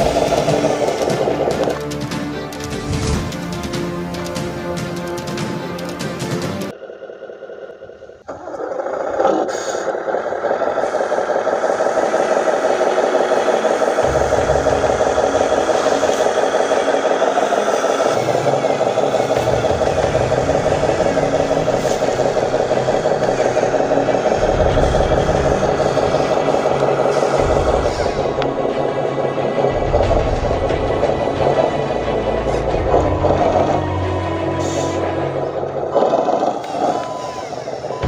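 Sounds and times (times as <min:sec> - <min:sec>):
remote-control truck motor whine: 0:00.0 - 0:02.0, 0:06.7 - 0:38.0
low rumble: 0:14.0 - 0:37.3.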